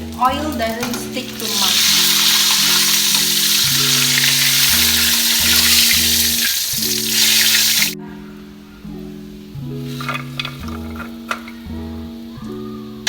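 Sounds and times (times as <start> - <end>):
macaroni sizzling in hot oil: 0.0 - 8.0
background music simple melody: 0.0 - 13.0.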